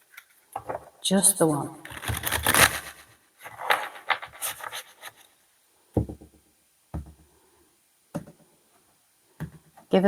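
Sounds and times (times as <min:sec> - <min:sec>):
soft knocks on a table: 0:06.0 - 0:06.4, 0:07.0 - 0:07.3.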